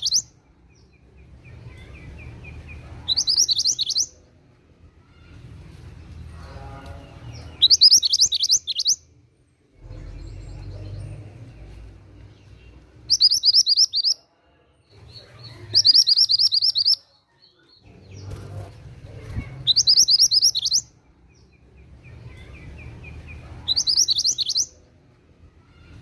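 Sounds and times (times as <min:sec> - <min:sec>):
songbird trilling: 0:00.0 - 0:00.2, 0:03.1 - 0:04.1, 0:07.6 - 0:09.0, 0:13.1 - 0:14.2, 0:15.7 - 0:17.0, 0:19.6 - 0:20.9, 0:23.7 - 0:24.7
soft bird twittering: 0:00.0 - 0:04.3, 0:07.3 - 0:14.2, 0:15.1 - 0:25.0.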